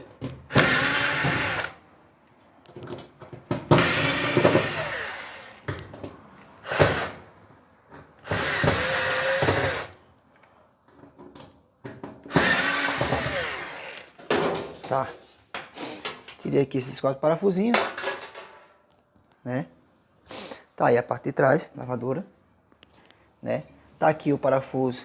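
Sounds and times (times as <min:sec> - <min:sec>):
cordless drill running: 0:00.5 - 0:01.8, 0:03.7 - 0:05.7, 0:06.6 - 0:07.2, 0:08.2 - 0:10.0, 0:12.3 - 0:14.1.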